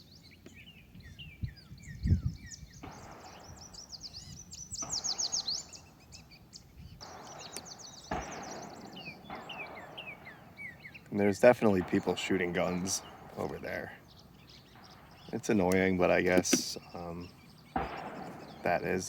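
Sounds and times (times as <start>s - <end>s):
songbirds chirping and singing: 0.0s - 19.0s
distant gunshots: 2.6s - 19.0s.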